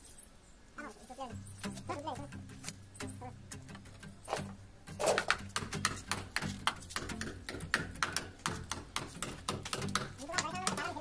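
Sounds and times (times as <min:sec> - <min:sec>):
hammering nails into wood: 0:05.0 - 0:11.0.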